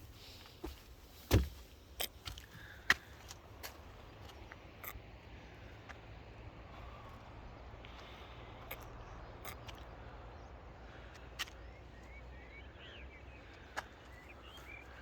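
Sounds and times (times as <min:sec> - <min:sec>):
quiet outdoor background noise: 0:00.0 - 0:15.0.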